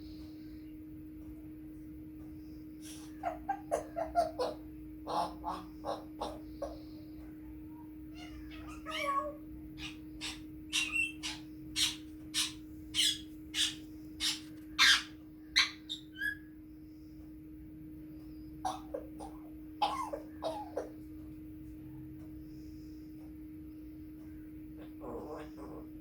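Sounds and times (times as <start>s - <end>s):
parrot wavering call: 2.9s - 6.9s, 8.1s - 16.5s
parrot cough-like sounds: 18.6s - 20.9s.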